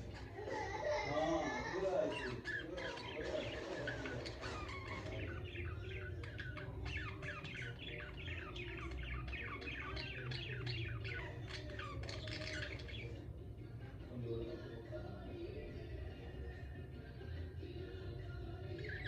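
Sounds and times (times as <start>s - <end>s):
budgerigars chirping: 1.8s - 13.3s.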